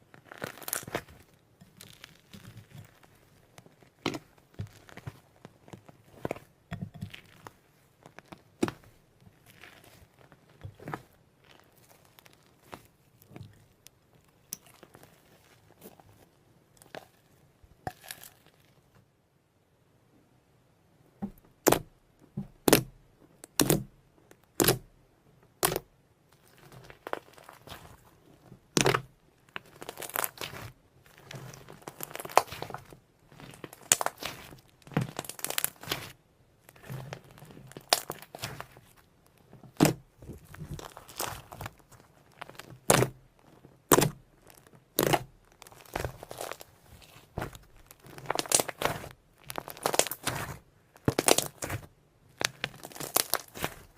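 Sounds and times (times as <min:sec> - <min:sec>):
slime squishing and crackling: 0:00.0 - 0:18.8, 0:23.5 - 0:24.9, 0:25.6 - 0:53.9
slime popping: 0:23.5 - 0:23.8, 0:28.7 - 0:38.8, 0:43.9 - 0:46.7, 0:47.4 - 0:53.9.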